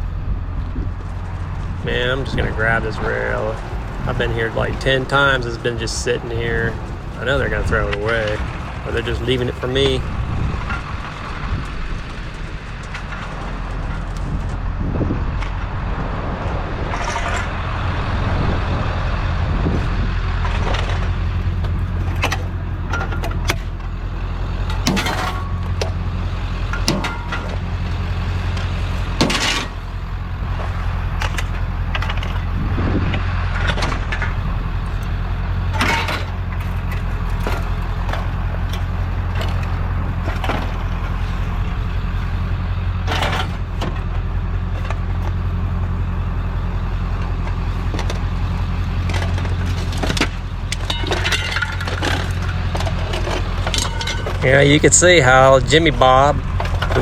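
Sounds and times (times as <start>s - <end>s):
truck engine idling: 0.0s - 57.0s
metal knocks and clanks: 2.3s - 14.6s, 16.8s - 17.6s, 20.4s - 24.0s, 24.6s - 26.0s, 26.7s - 27.7s, 28.5s - 41.9s, 43.0s - 45.4s, 49.0s - 57.0s.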